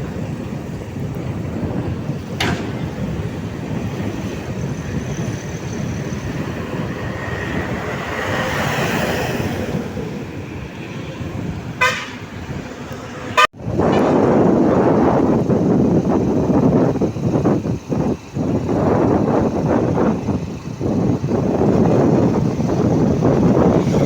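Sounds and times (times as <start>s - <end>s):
traffic and road noise: 0.0s - 24.0s
vehicle horn toot: 11.8s - 12.3s.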